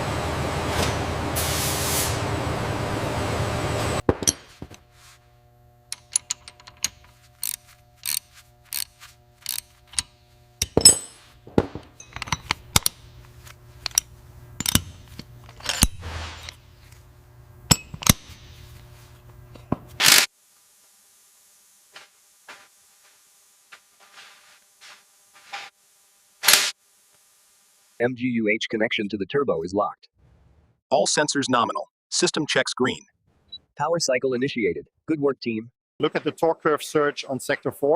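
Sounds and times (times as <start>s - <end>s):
loud hiss of air: 1.4s - 2.2s
low steady hum: 2.2s - 19.8s
metal tools clinking: 5.9s - 11.3s, 12.0s - 13.0s.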